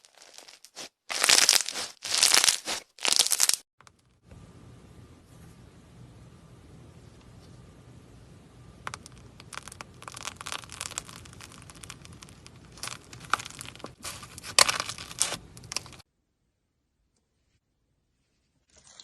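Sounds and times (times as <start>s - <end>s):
slime crackling and popping: 0.0s - 3.6s, 8.9s - 16.0s.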